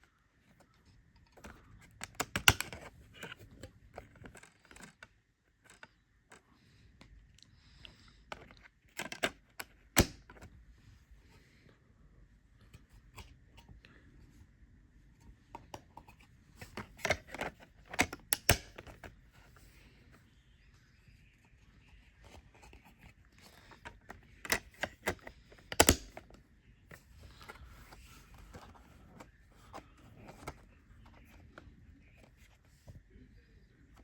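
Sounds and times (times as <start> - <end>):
plastic cases clicking: 1.3 - 6.0, 16.6 - 19.2, 23.4 - 26.4.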